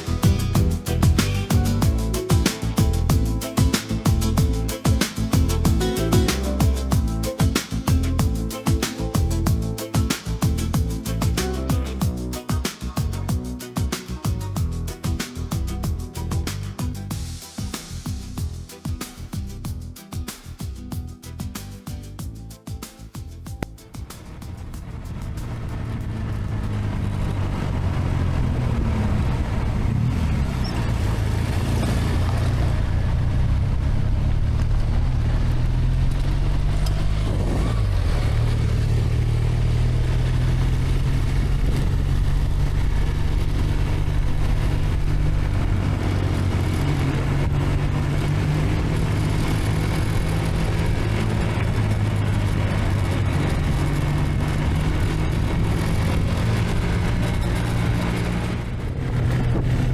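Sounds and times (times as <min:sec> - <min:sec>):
motorcycle engine running: 0:00.0 - 0:19.9, 0:23.2 - 0:59.9
wind rushing: 0:39.8 - 0:59.9.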